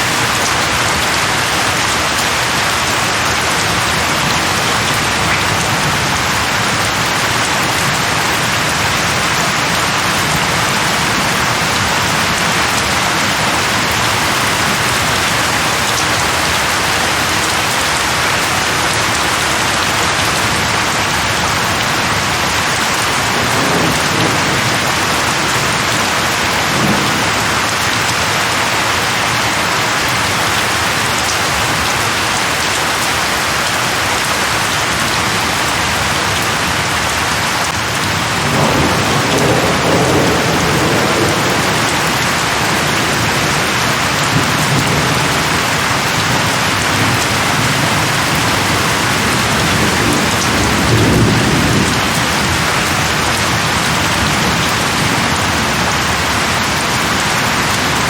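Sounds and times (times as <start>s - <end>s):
rain falling on leaves: 0.0s - 58.0s
thunder rolling: 3.4s - 28.3s, 37.8s - 56.3s.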